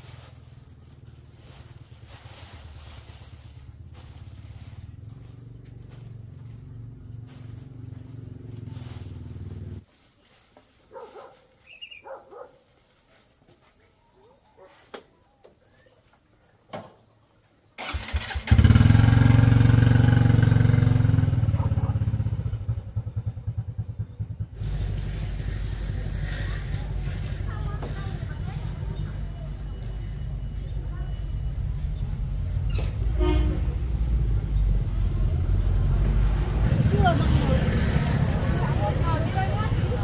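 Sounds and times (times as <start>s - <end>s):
small engine running: 18.1s - 29.1s.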